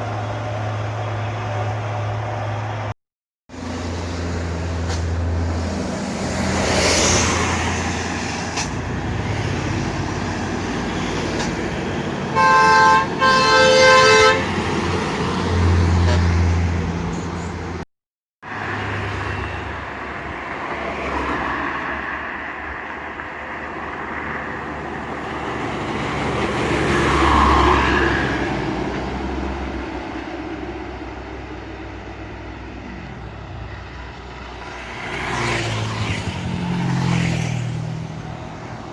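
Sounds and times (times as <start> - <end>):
bus and truck engines under load: 0.0 - 38.9
multi-tone musical air horn: 12.3 - 14.6.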